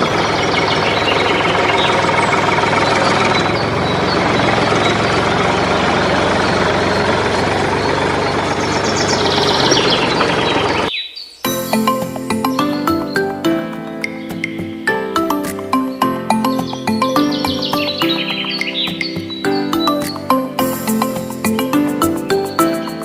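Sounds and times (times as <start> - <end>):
small engine rattling: 0.0 - 10.9.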